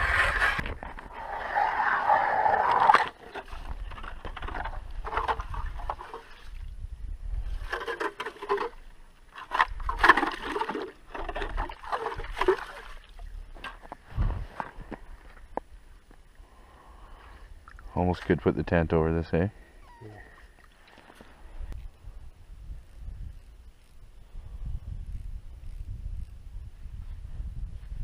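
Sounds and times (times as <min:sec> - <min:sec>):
water and slush splashing: 0:07.6 - 0:13.3.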